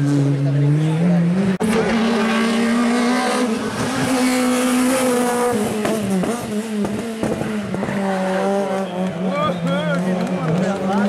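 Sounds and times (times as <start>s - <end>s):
rally car engine revving: 0.0s - 11.0s
engine crackles: 3.7s - 11.0s.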